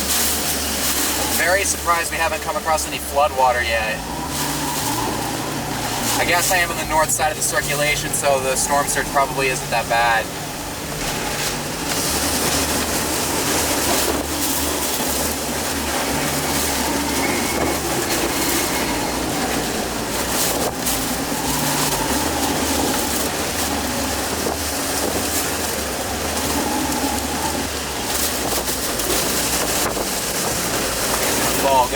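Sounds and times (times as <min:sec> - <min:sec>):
driving rain on a vehicle: 0:00.0 - 0:31.9
engine and road rumble: 0:00.0 - 0:31.9
wind gusts buffeting a vehicle: 0:03.4 - 0:08.2, 0:10.3 - 0:31.9.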